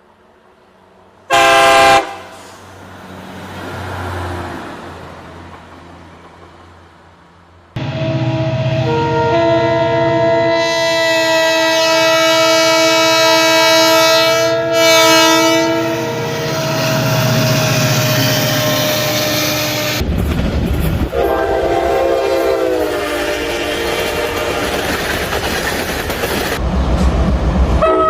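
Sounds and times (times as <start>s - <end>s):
train rumble: 0.0s - 28.0s
locomotive air horn chord: 1.3s - 2.6s, 7.8s - 20.0s, 21.1s - 24.8s, 27.8s - 28.0s.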